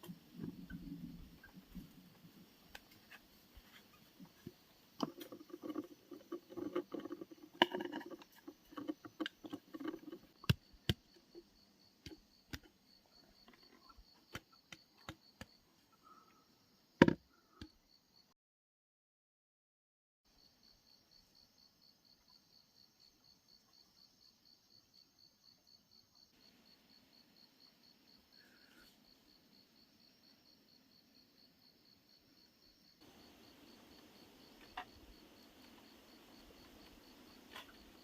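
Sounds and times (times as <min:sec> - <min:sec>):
crickets chirping: 0:00.2 - 0:18.3, 0:20.3 - 0:38.0
light knocks taps and scrapes: 0:02.7 - 0:10.6.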